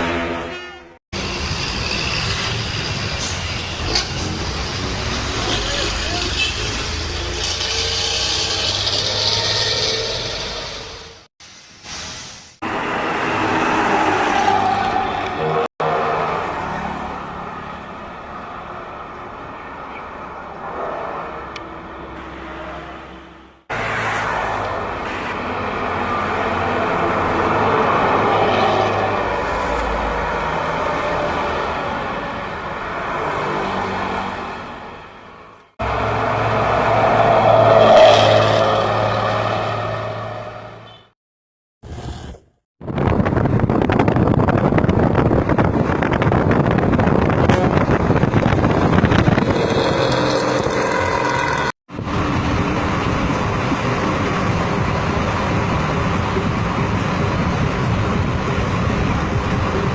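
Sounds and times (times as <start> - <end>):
bus diesel engine running: 44.8 - 59.9.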